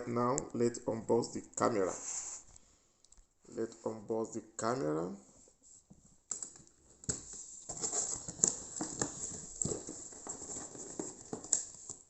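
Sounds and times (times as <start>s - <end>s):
packaging being opened by hand: 6.3s - 12.0s.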